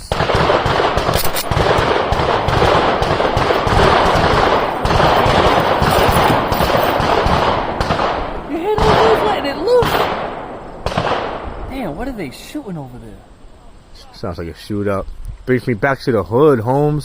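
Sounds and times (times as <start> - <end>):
rapid gunfire barrage: 0.0 - 11.5.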